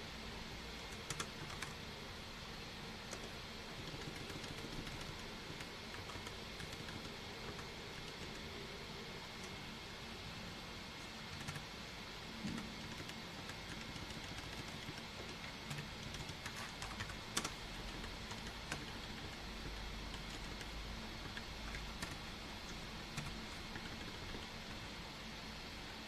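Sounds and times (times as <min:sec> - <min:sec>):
steady background hiss: 0:00.0 - 0:26.0
computer keyboard typing: 0:00.8 - 0:01.8, 0:03.0 - 0:08.6, 0:11.1 - 0:11.7, 0:12.4 - 0:24.9.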